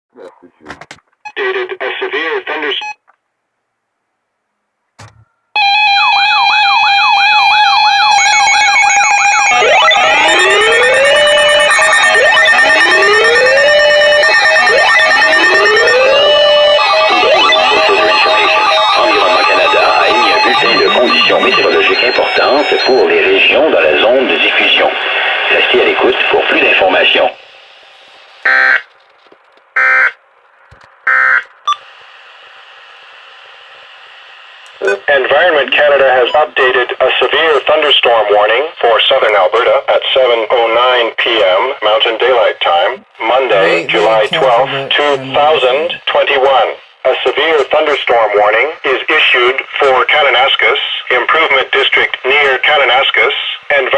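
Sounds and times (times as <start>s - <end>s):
rising siren: 5.6s - 23.0s
yelping electronic siren: 5.6s - 23.1s
warbling digital data tones: 20.3s - 22.3s.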